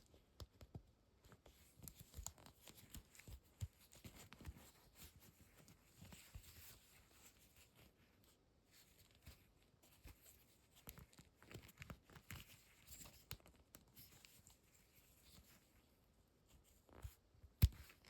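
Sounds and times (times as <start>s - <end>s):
small clicks and taps: 0.0s - 4.7s, 10.1s - 14.6s, 16.9s - 18.0s.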